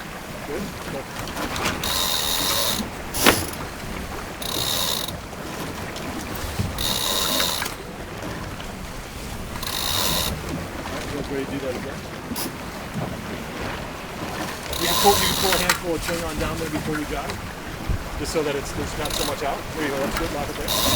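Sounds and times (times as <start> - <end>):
ratchet block buzzing: 4.4 - 5.1, 6.8 - 7.8, 9.6 - 10.4, 19.0 - 19.4, 20.7 - 20.9.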